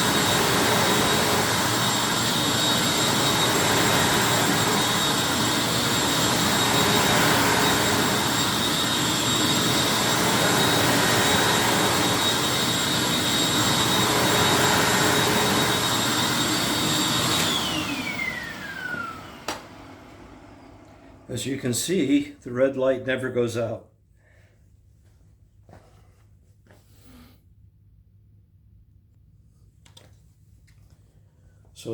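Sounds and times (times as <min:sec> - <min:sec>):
vacuum motor winding down: 0:00.0 - 0:21.4
vacuum cleaner running: 0:00.0 - 0:22.0.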